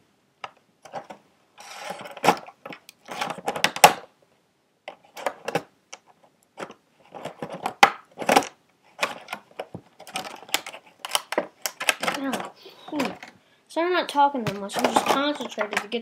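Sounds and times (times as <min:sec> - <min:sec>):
packaging clicks and knocks: 0:00.4 - 0:04.1, 0:04.9 - 0:13.4, 0:14.4 - 0:16.0
cardboard and paper rustling: 0:06.6 - 0:13.4, 0:14.2 - 0:16.0.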